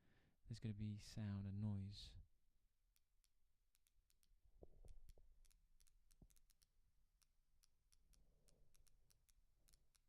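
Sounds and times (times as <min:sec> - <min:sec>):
high-pitched ticking crackle: 0:02.9 - 0:10.0.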